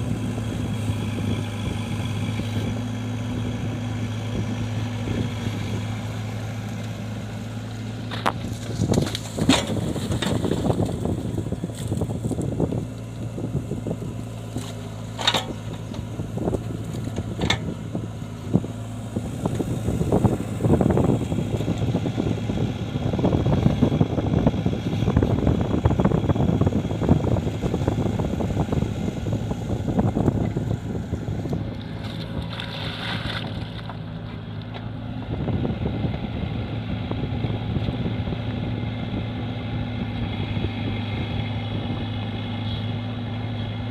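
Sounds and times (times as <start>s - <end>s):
excavator diesel engine running: 0.0s - 43.9s
digging clatter and scraping: 8.1s - 12.6s, 14.5s - 17.8s, 31.8s - 34.8s.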